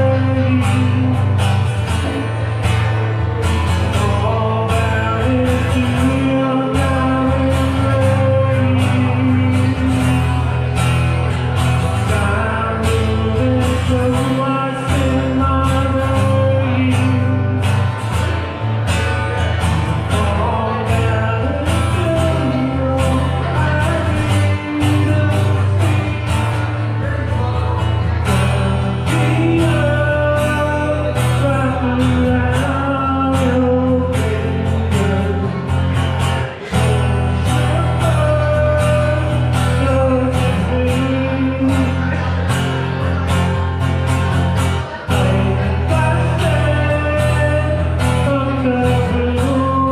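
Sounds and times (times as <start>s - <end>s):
guitar: 0.0s - 49.9s
person singing: 0.0s - 49.9s.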